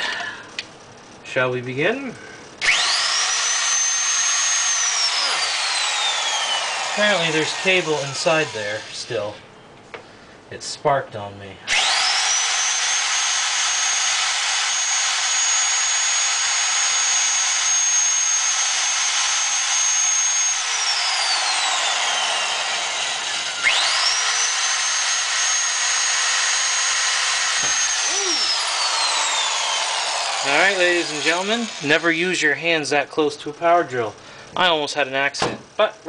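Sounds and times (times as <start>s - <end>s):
power drill boring through metal: 2.5s - 9.3s, 11.7s - 32.5s.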